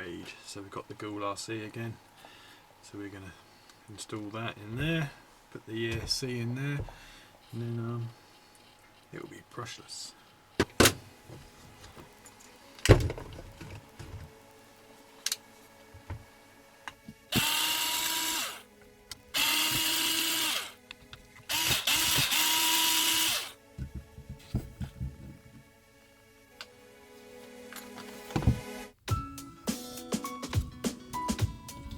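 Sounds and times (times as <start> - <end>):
electric drill spinning: 17.3 - 18.7, 19.3 - 20.8, 21.4 - 23.6.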